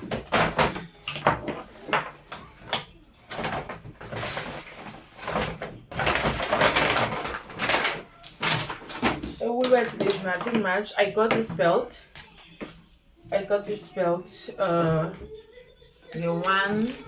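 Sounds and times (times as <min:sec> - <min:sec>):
bags rustling: 0:00.0 - 0:11.5
knocks of shopping items: 0:00.0 - 0:11.9.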